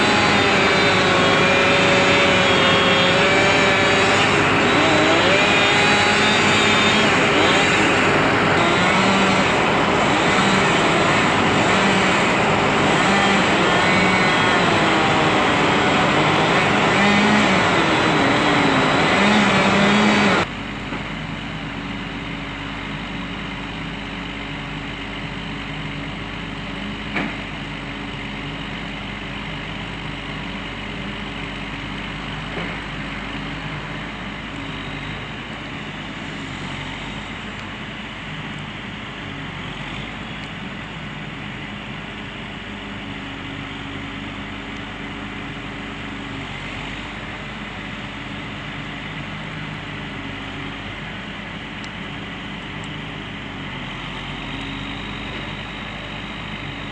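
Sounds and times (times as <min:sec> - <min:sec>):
machine engine revving: 0:00.0 - 0:20.5
quieter engine running: 0:00.0 - 0:56.9.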